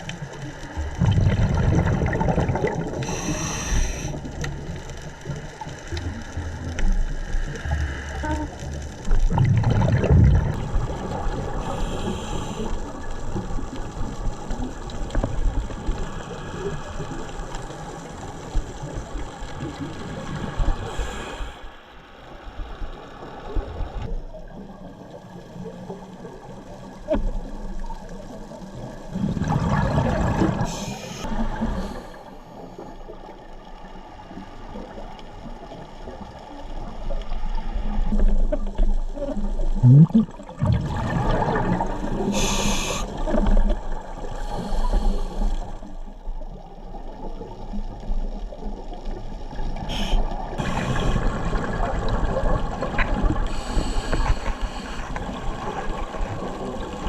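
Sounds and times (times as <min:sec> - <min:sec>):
exhaled bubbles gurgling underwater: 0:00.0 - 0:21.6, 0:22.7 - 0:57.0
underwater wash: 0:00.0 - 0:57.0
regulator inhale hiss: 0:03.0 - 0:04.3, 0:11.6 - 0:13.0, 0:20.8 - 0:22.1, 0:30.6 - 0:32.6, 0:42.2 - 0:43.2, 0:44.2 - 0:45.9, 0:49.8 - 0:51.4, 0:53.4 - 0:55.4.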